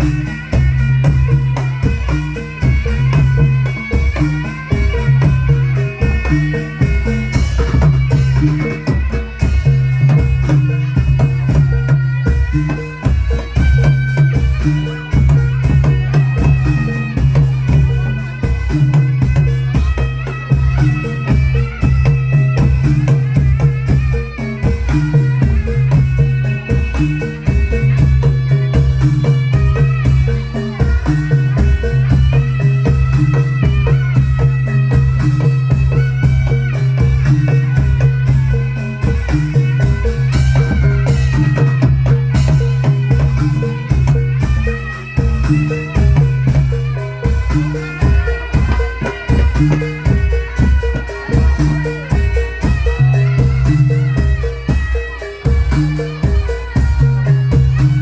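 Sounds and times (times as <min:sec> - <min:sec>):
low pulsing drum beat: 0:00.0 - 0:58.0
rattling percussion: 0:00.0 - 0:58.0
wavering melody: 0:00.0 - 0:58.0.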